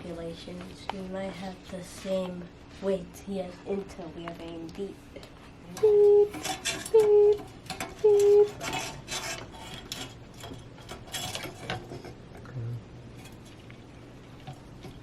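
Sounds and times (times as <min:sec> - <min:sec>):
small parts and tools clattering: 0:05.8 - 0:12.2.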